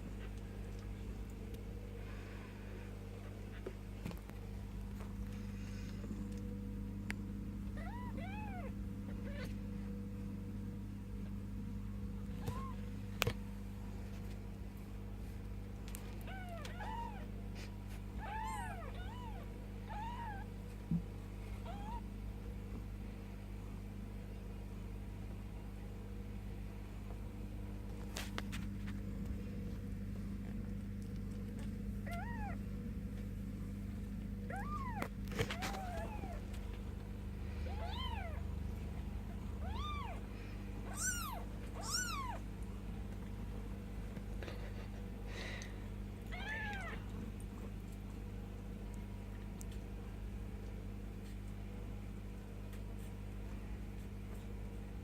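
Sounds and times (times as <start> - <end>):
steady low hum: 0.0 - 55.0
kittens mewing: 7.7 - 9.6, 16.2 - 20.5, 31.6 - 32.7, 34.4 - 36.7, 37.4 - 38.6, 39.2 - 42.5, 44.3 - 47.2.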